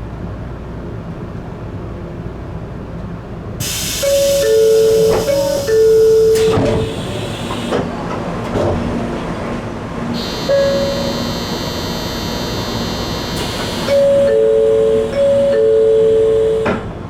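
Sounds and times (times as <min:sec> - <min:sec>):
train running: 0:02.9 - 0:17.0
two-note door chime: 0:04.0 - 0:06.6, 0:10.2 - 0:16.8
high steady whine: 0:10.2 - 0:15.4.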